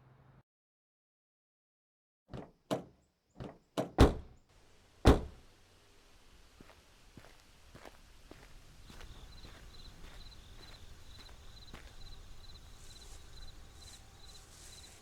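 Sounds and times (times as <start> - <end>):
knocking on a door: 2.3 - 4.3, 5.1 - 5.4.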